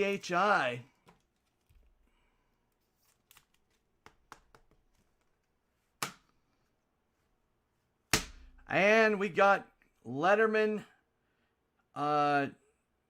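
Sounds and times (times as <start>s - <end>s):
cards rustling and clicking: 0.9s - 2.1s, 2.7s - 6.4s.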